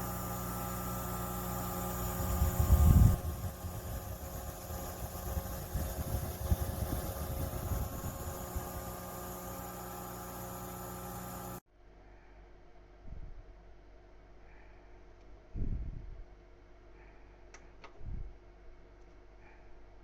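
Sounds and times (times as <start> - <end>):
fan motor hum and airflow hiss: 0.0 - 11.6.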